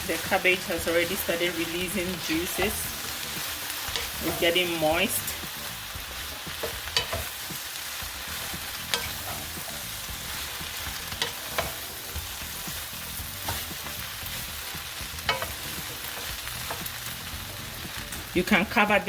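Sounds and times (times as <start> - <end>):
cabbage sizzling in a pan: 0.0 - 19.0
utensil clicking against pan: 6.5 - 7.4, 8.8 - 9.7, 10.8 - 11.9, 15.1 - 17.2.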